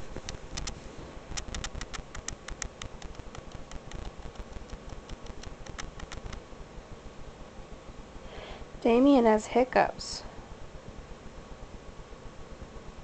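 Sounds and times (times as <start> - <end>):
faint steady hum: 0.0 - 13.0
quick irregular clicks: 0.2 - 6.4.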